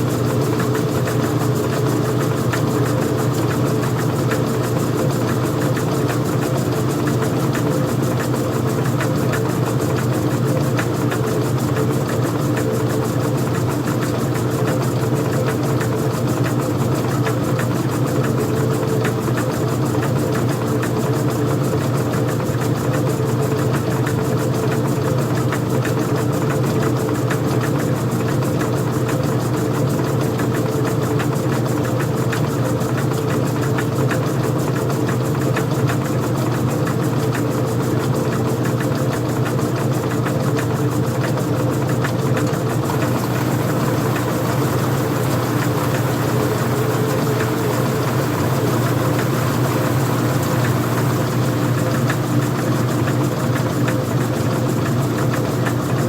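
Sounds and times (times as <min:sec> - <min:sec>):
washing machine running: 0:00.0 - 0:56.0.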